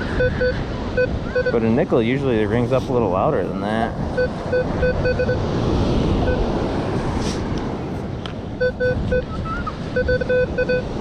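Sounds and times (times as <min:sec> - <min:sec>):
metal detector beeps: 0:00.0 - 0:01.6, 0:04.2 - 0:05.4, 0:06.2 - 0:06.5, 0:08.6 - 0:10.9
surf washing: 0:00.0 - 0:11.0
wind buffeting microphone: 0:00.0 - 0:11.0.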